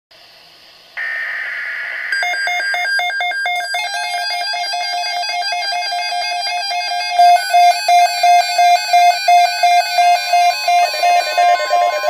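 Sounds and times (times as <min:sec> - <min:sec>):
buzzy digital data burst: 0:01.0 - 0:07.2
rapid electronic beeps: 0:01.0 - 0:12.0.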